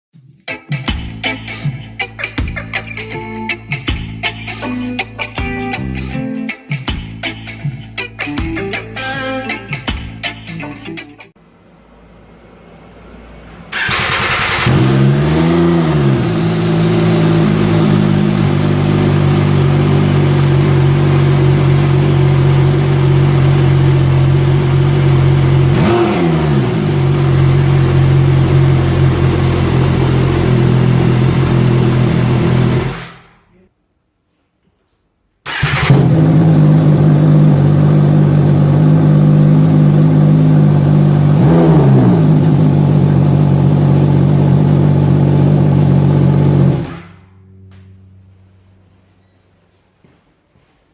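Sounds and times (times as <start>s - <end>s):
motorcycle throttle blips: 13.5s - 33.3s
motorcycle engine idling loudly: 13.7s - 33.3s, 35.6s - 47.0s.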